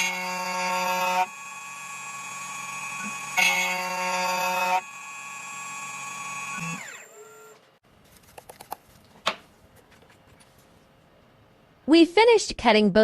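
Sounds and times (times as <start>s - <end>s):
spindle motor whining: 0.0s - 7.6s.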